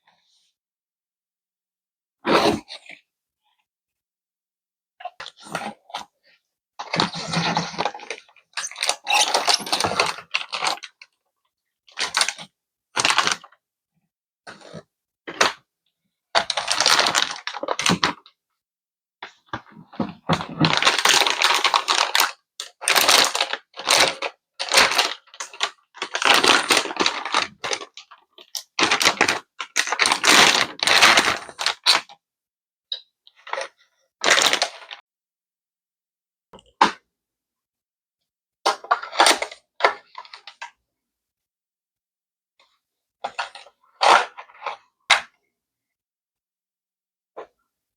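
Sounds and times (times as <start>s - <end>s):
packaging rustling: 20.6s - 28.1s.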